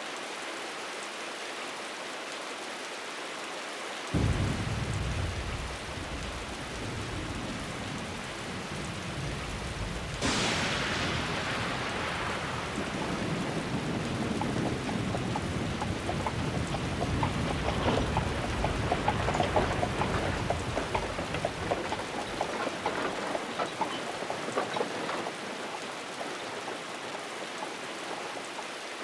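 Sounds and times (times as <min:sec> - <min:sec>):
heavy rain: 0:00.0 - 0:29.0
sharp thunderclap: 0:04.2 - 0:26.8
thunder rumbling: 0:04.2 - 0:28.7
faint clicks: 0:14.0 - 0:28.6.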